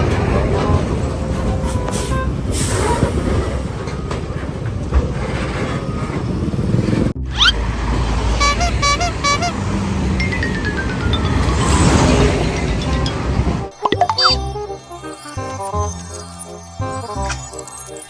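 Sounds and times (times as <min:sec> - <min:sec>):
road traffic rumble: 0:00.0 - 0:13.8
musical horn notes: 0:07.5 - 0:10.0.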